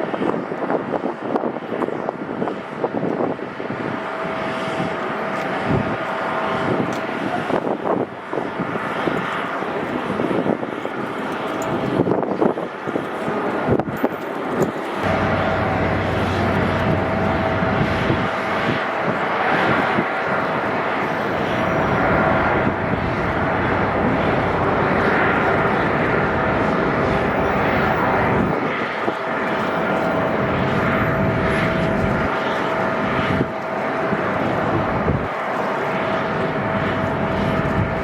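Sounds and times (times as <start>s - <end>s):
jet engines whining and roaring: 0.0s - 38.0s
low rumble: 15.0s - 20.2s, 21.0s - 33.6s, 36.0s - 38.0s.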